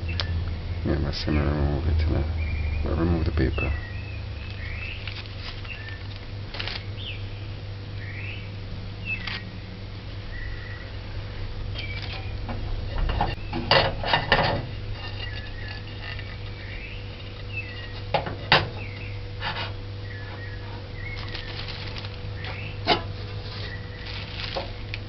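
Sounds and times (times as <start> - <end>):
low hum: 0.0 - 25.0
metal pan and utensils clattering: 13.1 - 15.3.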